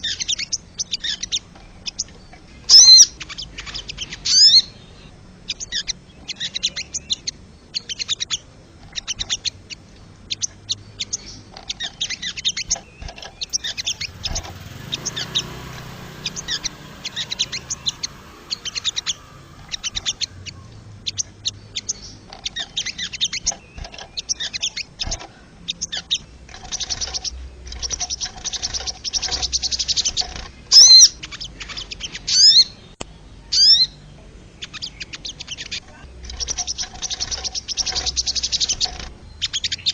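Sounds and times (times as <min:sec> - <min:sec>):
bird dry ticking calls: 0:00.0 - 0:39.9
loud sharp bird calls: 0:00.0 - 0:39.9.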